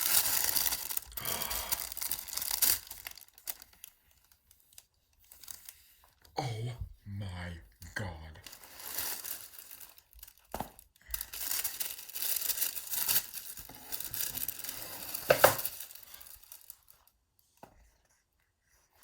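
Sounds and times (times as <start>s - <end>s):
packaging tearing and crinkling: 0.0s - 3.9s, 8.5s - 17.0s.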